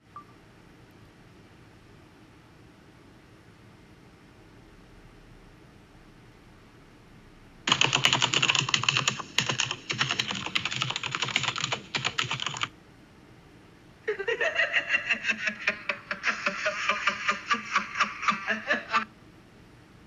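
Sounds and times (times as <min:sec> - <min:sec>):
rapid keyboard typing: 0:07.7 - 0:12.7, 0:15.1 - 0:19.0
person laughing: 0:14.1 - 0:19.0.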